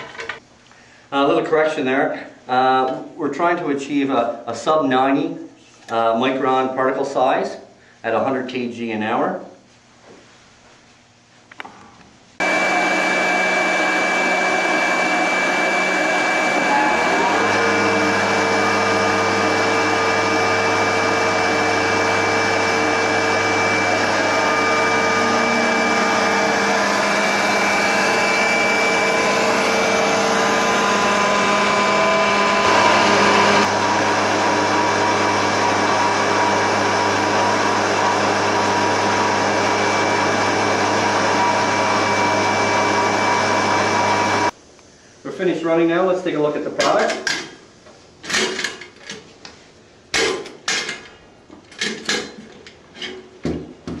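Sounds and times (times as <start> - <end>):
powder mill grinding with whine: 12.4 - 44.6.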